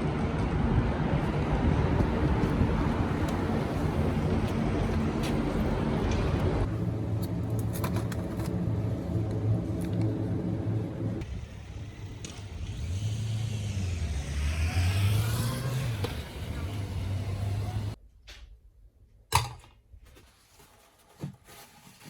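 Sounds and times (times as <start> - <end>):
vehicle engine humming: 0.0 - 18.0.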